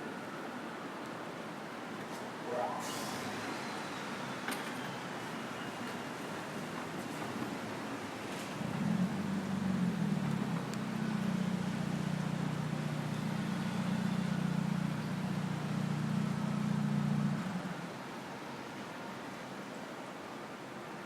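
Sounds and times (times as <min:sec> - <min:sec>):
street hiss: 0:02.1 - 0:21.0
vehicle engine running: 0:08.6 - 0:17.8.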